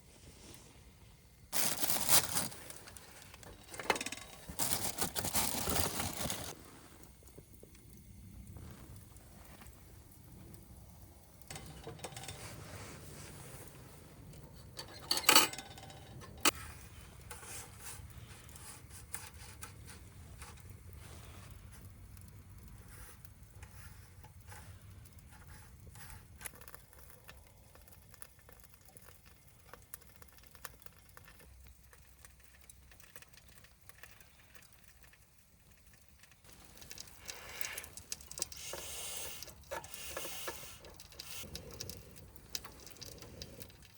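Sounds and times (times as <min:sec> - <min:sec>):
wood fire crackling: 0:01.2 - 0:43.9
clattering handling noise: 0:01.6 - 0:06.6, 0:11.5 - 0:18.0.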